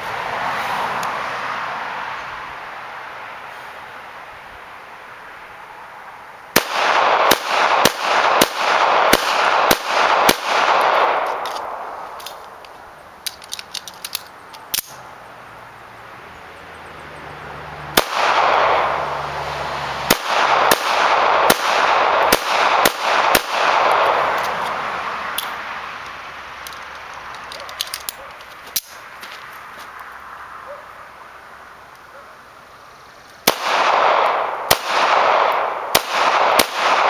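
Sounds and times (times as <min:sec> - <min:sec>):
pistol shots: 0:06.6 - 0:12.4, 0:18.0 - 0:19.0, 0:20.1 - 0:24.6, 0:33.4 - 0:37.0
small metallic clicks: 0:11.3 - 0:15.0, 0:25.4 - 0:29.0.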